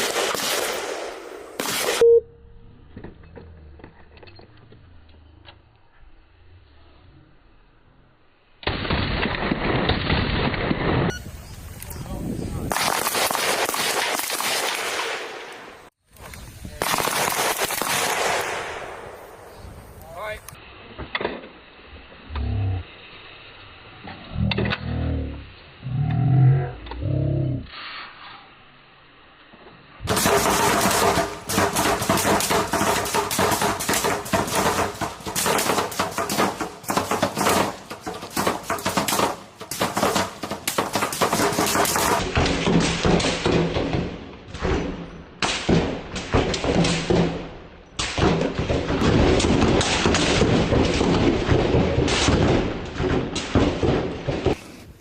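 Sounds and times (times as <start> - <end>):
rapid small-arms gunfire: 0.0 - 2.0, 12.6 - 15.6, 16.8 - 19.0, 30.1 - 54.8.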